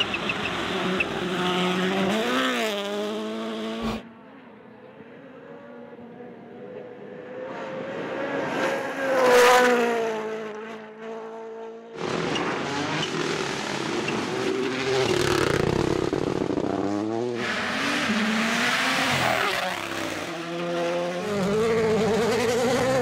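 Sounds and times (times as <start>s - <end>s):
tyre and road noise: 0.0s - 4.0s, 12.0s - 23.0s
rally car engine at high revs: 0.0s - 4.2s, 4.8s - 23.0s
rally car passing at speed: 0.0s - 23.0s.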